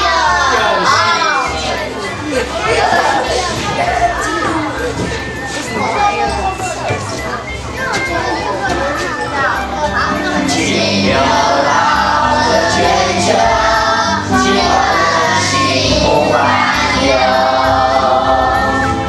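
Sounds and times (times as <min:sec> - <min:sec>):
sustained accompaniment: 0:09.5 - 0:19.0
choir singing: 0:10.0 - 0:19.0.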